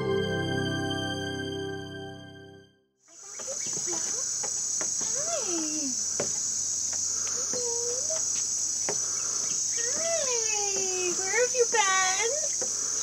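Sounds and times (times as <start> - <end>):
high-pitched insect chorus: 3.1 - 13.0.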